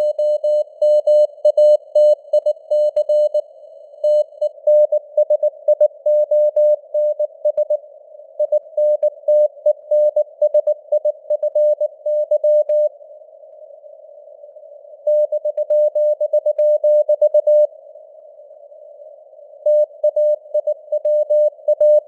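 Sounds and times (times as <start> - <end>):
morse code beeps: 0.0 - 3.4, 15.1 - 17.7, 19.7 - 22.0.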